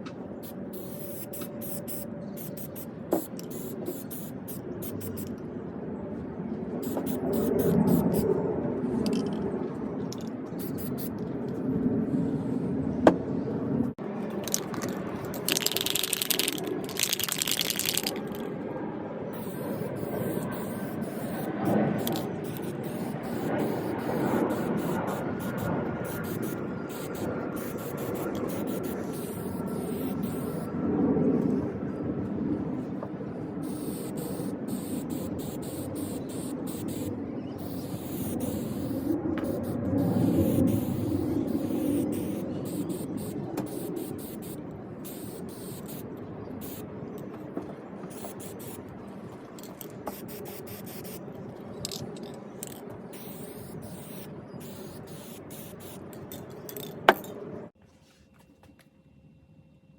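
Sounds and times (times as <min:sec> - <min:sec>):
spray can hissing: 0:00.4 - 0:05.3, 0:06.8 - 0:08.2, 0:10.6 - 0:11.2, 0:14.4 - 0:18.4, 0:19.4 - 0:30.6, 0:33.6 - 0:46.0, 0:46.6 - 0:46.8, 0:48.1 - 0:48.8, 0:49.6 - 0:51.2, 0:52.6 - 0:57.0.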